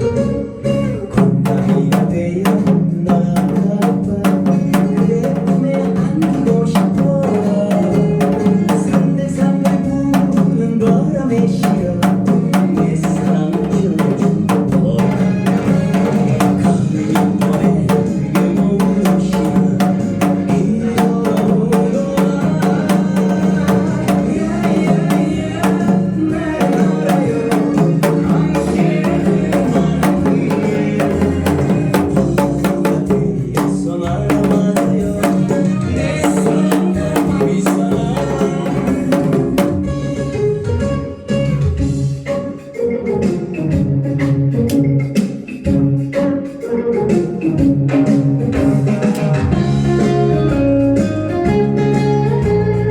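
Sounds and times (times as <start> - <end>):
recorded backing song: 0.0 - 52.9.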